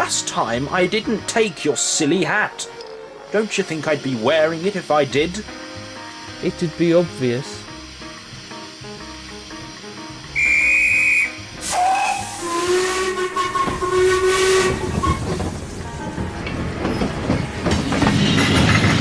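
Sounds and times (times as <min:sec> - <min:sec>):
hissing steam: 0:00.0 - 0:19.0
locomotive puffing: 0:06.4 - 0:19.0
steam locomotive whistle: 0:10.3 - 0:15.6
shrill pea-whistle blast: 0:10.4 - 0:15.2.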